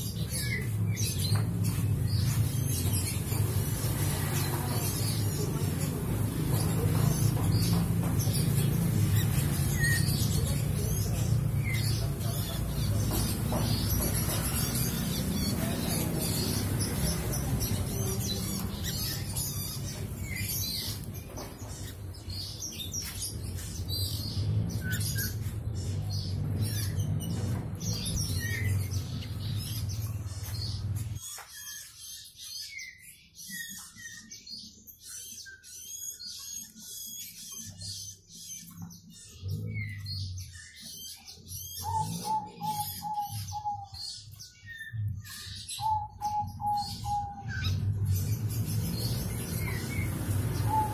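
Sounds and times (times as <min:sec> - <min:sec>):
young bird chirping: 0:35.0 - 0:50.9.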